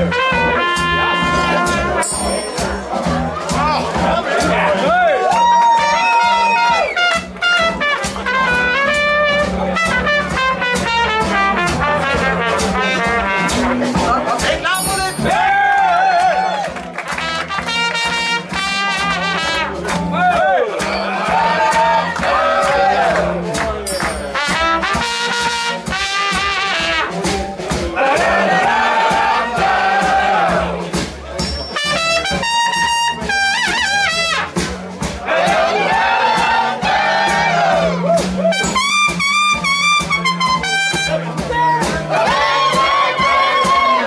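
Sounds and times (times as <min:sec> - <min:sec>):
horn playing lead line: 0:00.0 - 0:02.5, 0:05.8 - 0:14.1, 0:17.0 - 0:23.4, 0:24.3 - 0:27.3, 0:31.7 - 0:41.5
blues-rock band playing: 0:00.0 - 0:44.0.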